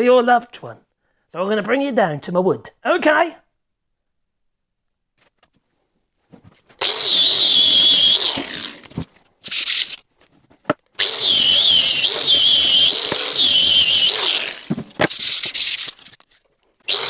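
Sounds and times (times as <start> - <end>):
power tool motor whine: 6.8 - 10.0, 11.0 - 16.0.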